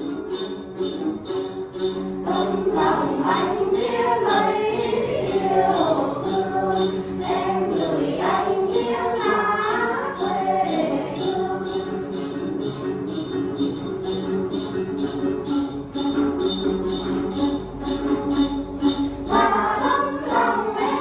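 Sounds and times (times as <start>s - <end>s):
jingling percussion: 0.0s - 21.0s
voices singing: 2.1s - 14.2s, 18.9s - 21.0s.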